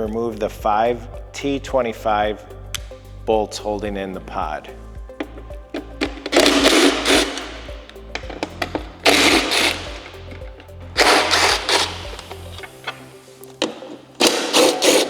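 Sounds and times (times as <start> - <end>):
background music: 0.0 - 15.0
cordless power driver spinning: 5.2 - 15.0.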